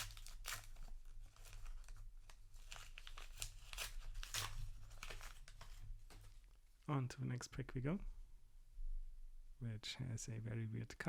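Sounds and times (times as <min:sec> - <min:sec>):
paper wrappers crinkling: 0:00.0 - 0:06.5.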